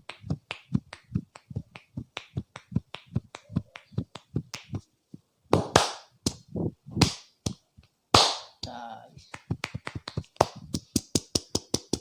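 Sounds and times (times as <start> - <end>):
hands tapping on head: 0.0 - 12.0
hand slaps: 5.5 - 12.0.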